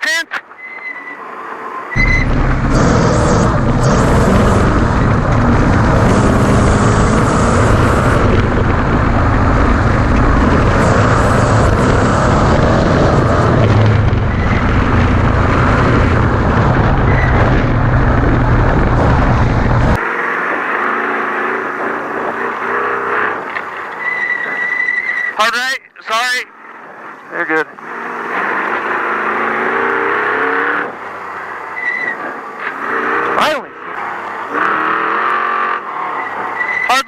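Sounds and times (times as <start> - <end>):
wind and off-road noise: 0.0 - 37.0
truck engine running hard: 2.0 - 24.0.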